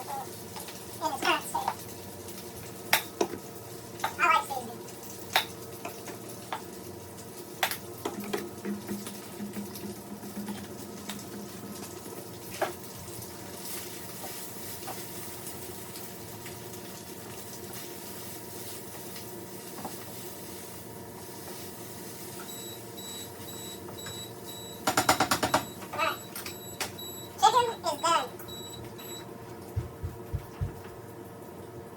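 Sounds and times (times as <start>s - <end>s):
pans cooking on stove hum: 0.0s - 31.9s
timer beeping high pips: 25.4s - 29.2s.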